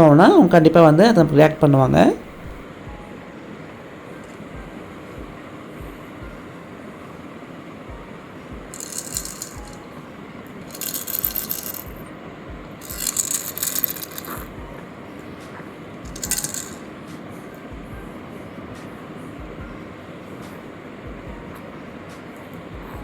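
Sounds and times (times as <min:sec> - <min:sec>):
baby rattle shaking: 0:08.7 - 0:09.8, 0:10.7 - 0:12.0, 0:12.8 - 0:14.5, 0:16.1 - 0:16.9.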